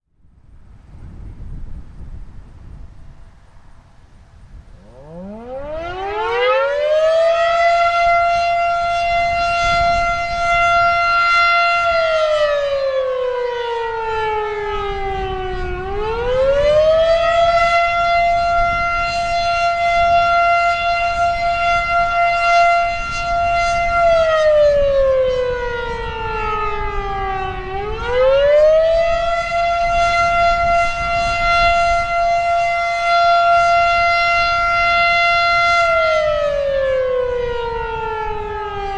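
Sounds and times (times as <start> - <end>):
warning siren rising and falling: 4.6 - 38.9.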